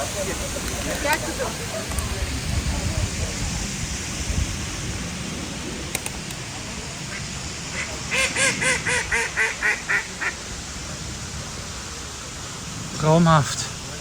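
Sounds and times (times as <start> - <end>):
waterfall rushing: 0.0 - 14.0
duck quacking: 7.7 - 10.4.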